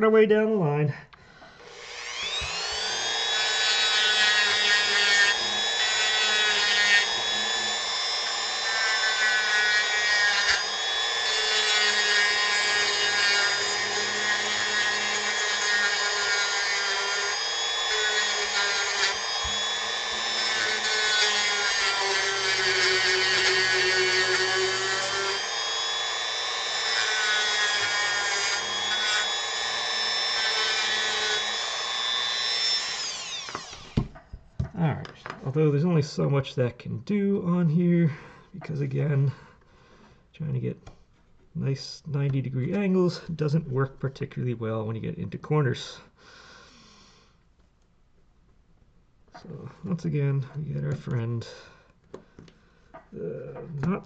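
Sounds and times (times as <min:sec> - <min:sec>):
rotary tool sanding wood: 0:01.6 - 0:34.1.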